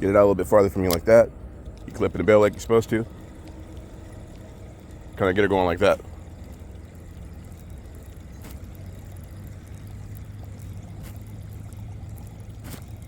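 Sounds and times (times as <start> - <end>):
low rumble: 0.0 - 13.0
sharp clicks: 0.8 - 2.6
lure plopping across water: 6.0 - 13.0.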